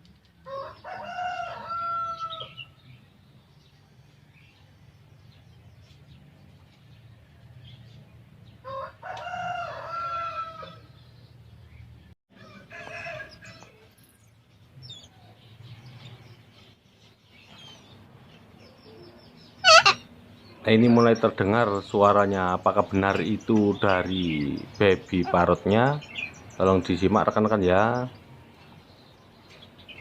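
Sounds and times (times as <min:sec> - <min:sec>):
bird calling: 0:19.6 - 0:20.1.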